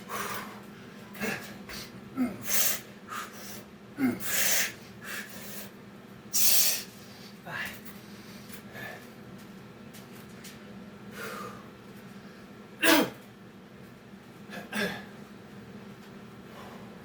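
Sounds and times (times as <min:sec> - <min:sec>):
man breathing hard: 0:00.0 - 0:05.8, 0:11.1 - 0:12.5, 0:16.4 - 0:17.0.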